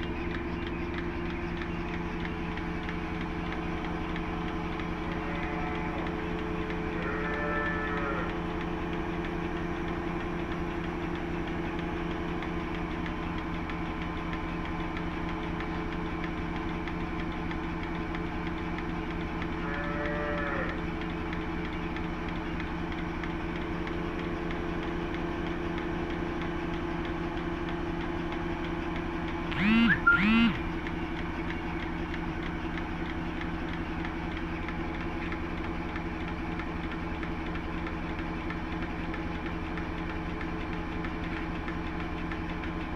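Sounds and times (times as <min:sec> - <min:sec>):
motor hum: 0:00.0 - 0:42.9
cattle mooing: 0:05.1 - 0:06.1, 0:07.0 - 0:08.3, 0:19.7 - 0:20.8.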